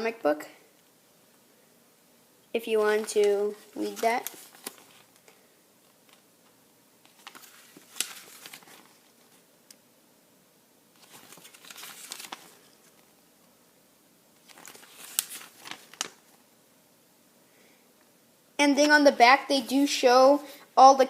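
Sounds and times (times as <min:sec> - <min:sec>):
paper rustling and crinkling: 0:02.8 - 0:06.2, 0:07.0 - 0:09.4, 0:11.0 - 0:13.1, 0:14.4 - 0:16.4.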